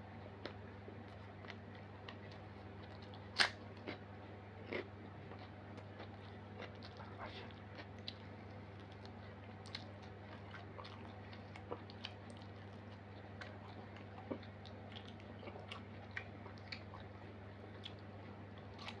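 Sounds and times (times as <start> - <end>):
steady low hum: 0.0 - 19.0
person chewing and biting food: 0.4 - 4.0, 4.6 - 17.1
mouth clicks and crunches: 1.4 - 4.0.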